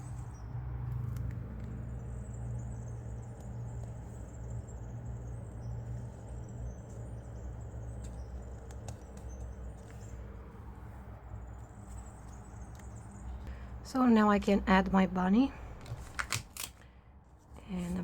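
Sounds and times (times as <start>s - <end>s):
steady low hum: 0.0s - 15.9s
paper and tape rustling: 15.8s - 18.0s.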